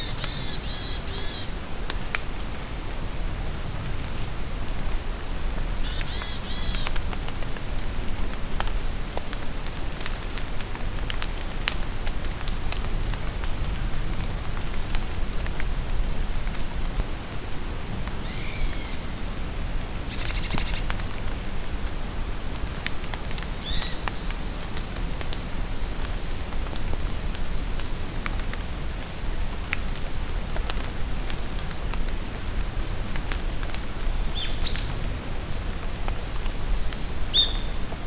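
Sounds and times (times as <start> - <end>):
birds calling: 0.0 - 1.6, 5.8 - 6.9
rain falling in a forest: 0.0 - 38.0
raindrops ticking: 4.0 - 17.0, 20.1 - 38.0.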